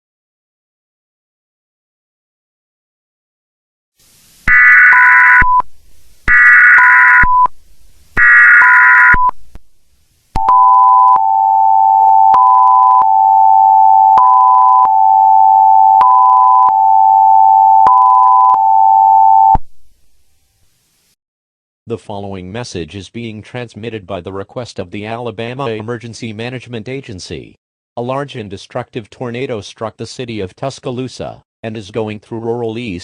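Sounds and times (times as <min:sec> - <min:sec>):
two-tone attention signal: 0:04.5 - 0:05.6, 0:06.3 - 0:07.5, 0:08.2 - 0:09.3
screeching digital data bursts: 0:06.3 - 0:07.5, 0:08.2 - 0:09.3
higher beep: 0:06.3 - 0:07.6, 0:08.2 - 0:09.4, 0:10.4 - 0:19.6.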